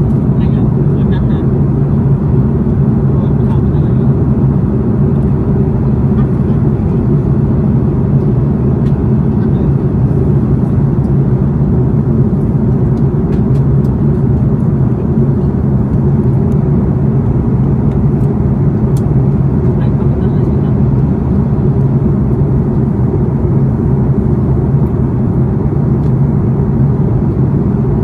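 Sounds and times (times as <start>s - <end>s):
vehicle engine drone: 0.0s - 28.0s.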